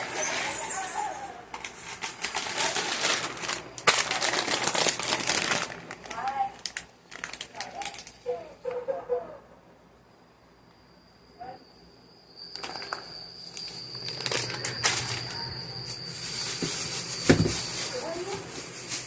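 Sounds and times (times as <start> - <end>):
rustling and handling noises: 0.0 - 8.8, 12.6 - 19.0.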